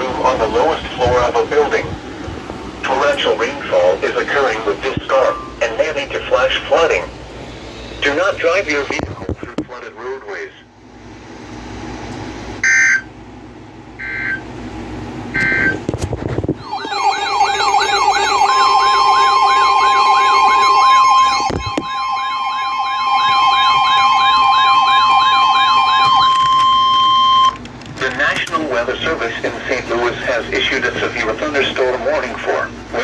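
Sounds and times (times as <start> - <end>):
warbling alert siren: 12.6 - 13.1, 14.0 - 14.4, 15.4 - 27.6
steady alert tone: 16.6 - 27.6.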